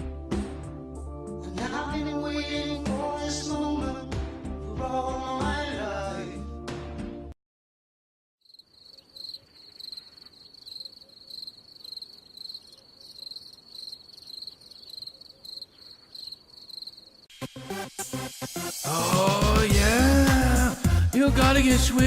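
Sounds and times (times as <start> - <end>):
music: 0.0 - 7.4, 17.3 - 22.0
crickets chirping: 8.4 - 17.3.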